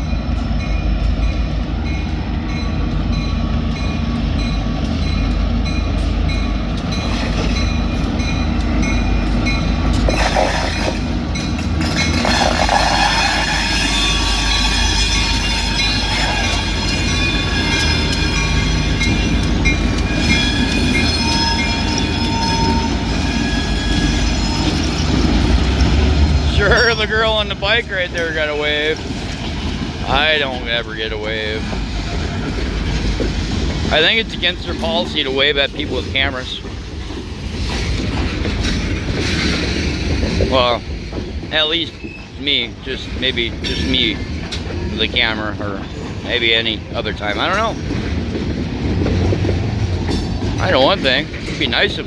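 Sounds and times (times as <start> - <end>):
diesel locomotive engine rumble: 0.0 - 52.0
wheels squealing: 10.0 - 30.6.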